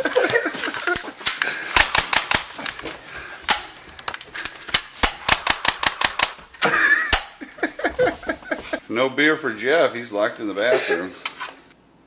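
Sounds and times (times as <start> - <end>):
airsoft gun firing: 1.7 - 2.6, 3.5 - 3.8, 4.7 - 6.5, 7.1 - 7.4.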